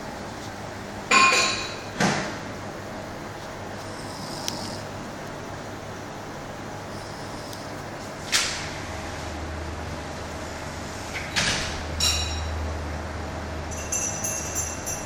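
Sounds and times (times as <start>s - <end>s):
person snoring heavily: 3.8s - 4.9s, 6.9s - 7.7s.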